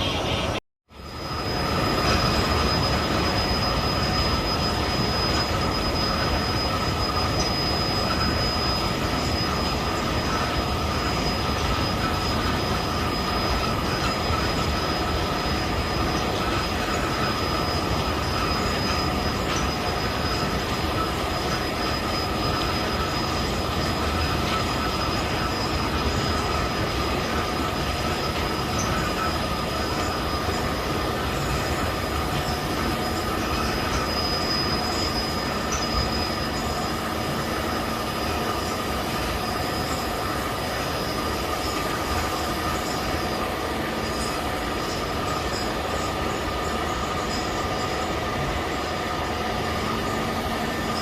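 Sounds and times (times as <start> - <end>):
high-pitched squealing whine: 0.0 - 51.0.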